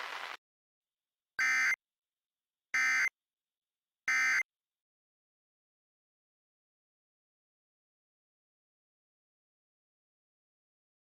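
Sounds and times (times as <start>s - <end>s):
buzzy digital data bursts: 0.0s - 0.4s.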